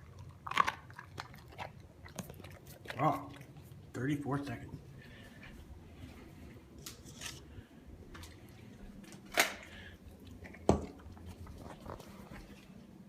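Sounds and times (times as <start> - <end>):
pet crunching chicken: 0.0 - 5.6.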